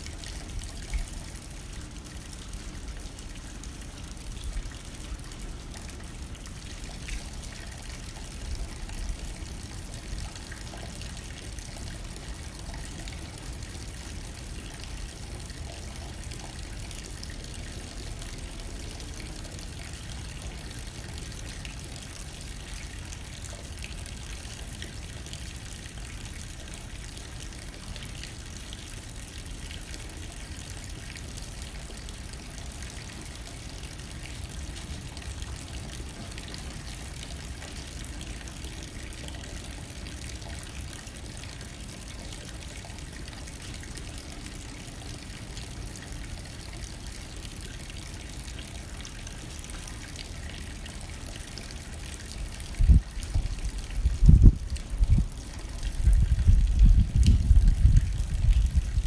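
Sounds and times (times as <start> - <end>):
rain hitting a window: 0.1 - 47.2, 48.4 - 59.0
low wind rumble: 52.6 - 59.0.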